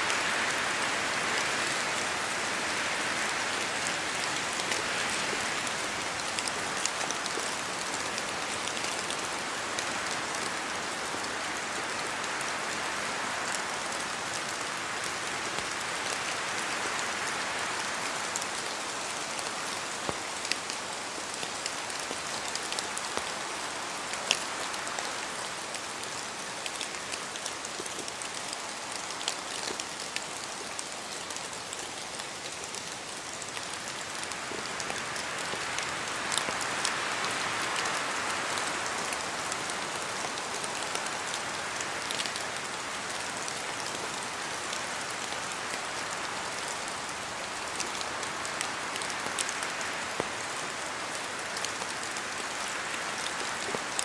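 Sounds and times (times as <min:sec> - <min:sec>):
steady rain in forest: 0:00.0 - 0:54.0
wind: 0:00.0 - 0:54.0.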